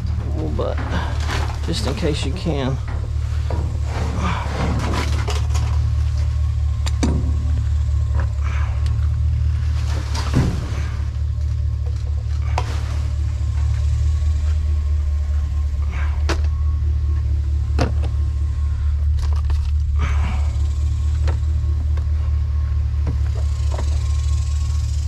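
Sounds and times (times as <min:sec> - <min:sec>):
knocks and clatters: 0:00.0 - 0:14.6
vehicle engine idling: 0:00.0 - 0:25.0.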